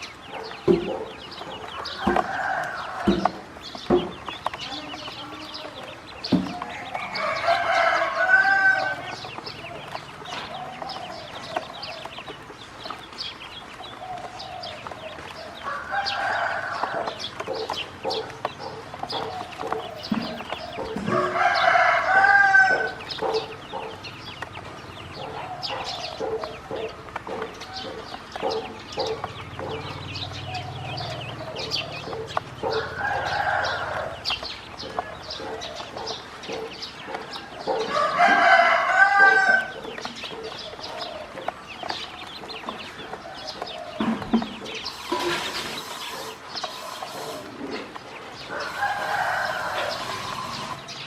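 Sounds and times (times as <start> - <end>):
chickens clucking: 0.0 - 51.0
rooster crowing: 1.7 - 3.4, 6.9 - 9.2, 15.5 - 17.2, 20.6 - 23.0, 32.7 - 34.4, 37.6 - 39.8, 48.5 - 50.8.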